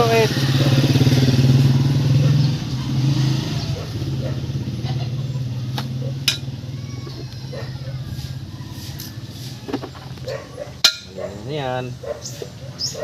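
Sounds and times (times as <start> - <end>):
small engine running: 0.0 - 10.2.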